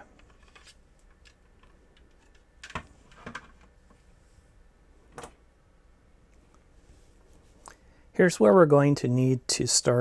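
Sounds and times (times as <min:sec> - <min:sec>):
plastic parts clicking and knocking: 0:00.0 - 0:03.8.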